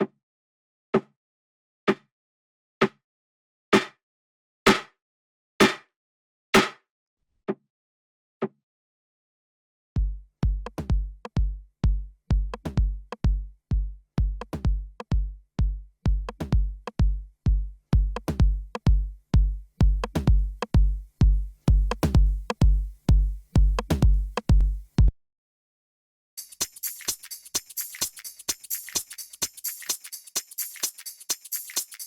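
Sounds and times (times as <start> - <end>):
deep kick drum: 10.0 - 25.1.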